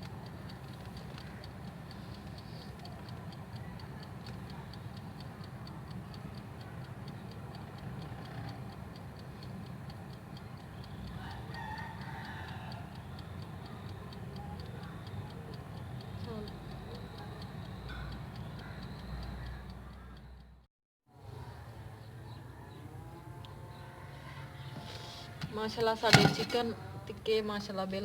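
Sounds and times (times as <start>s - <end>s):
oven timer ticking: 0.0s - 20.7s, 25.4s - 28.0s
rooster crowing: 11.1s - 13.2s, 23.8s - 25.6s
oven fan humming: 24.4s - 28.0s.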